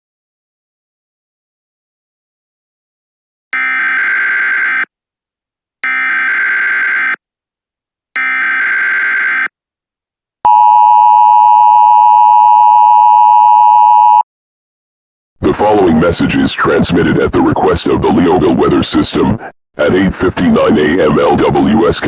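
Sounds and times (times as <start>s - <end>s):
two-tone attention signal: 10.5s - 14.2s.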